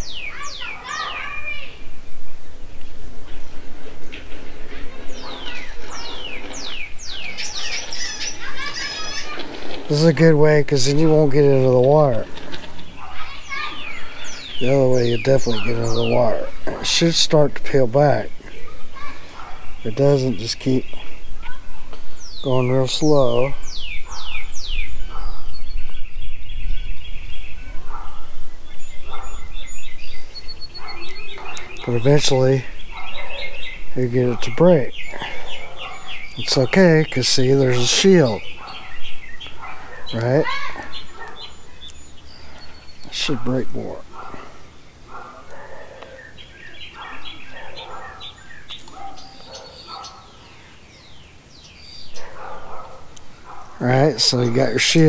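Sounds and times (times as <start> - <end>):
faint distant voices: 0.0 - 24.3
faint bird chirps: 4.7 - 9.8, 23.3 - 54.8.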